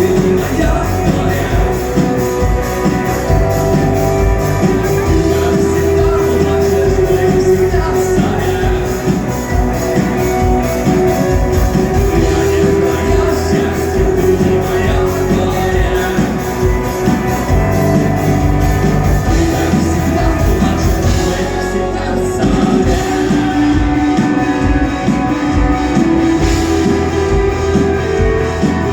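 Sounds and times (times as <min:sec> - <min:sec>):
electric guitar: 0:00.0 - 0:28.9
live rock band: 0:00.0 - 0:28.9
person singing: 0:00.0 - 0:28.9.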